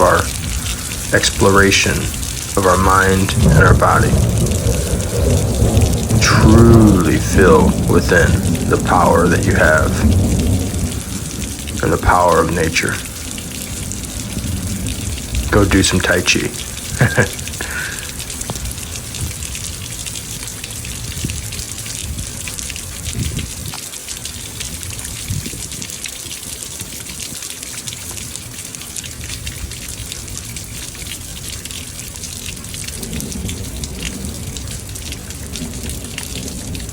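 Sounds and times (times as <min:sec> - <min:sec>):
rain falling: 0:00.0 - 0:36.9
low rumble: 0:02.0 - 0:15.7.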